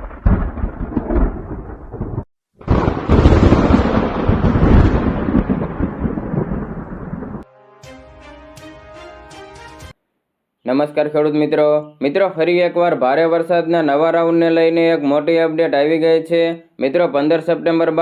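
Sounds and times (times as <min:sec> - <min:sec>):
thunder rumbling: 0:00.0 - 0:07.5
music: 0:07.4 - 0:10.0.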